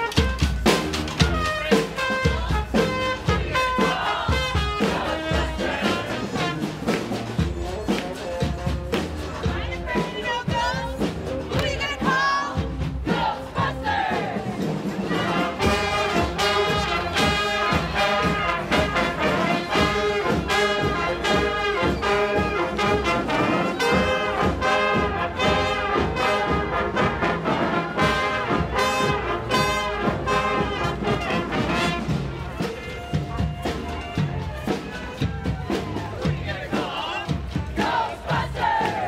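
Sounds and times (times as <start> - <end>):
brass band playing dance tune: 0.0 - 39.0.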